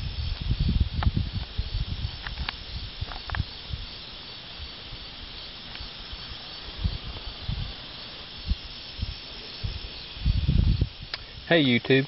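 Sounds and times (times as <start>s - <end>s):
steady hiss: 0.0s - 12.0s.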